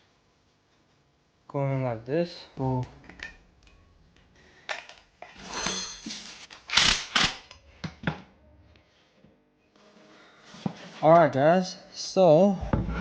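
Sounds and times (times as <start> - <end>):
metal tools clinking and scraping: 4.6 - 6.6.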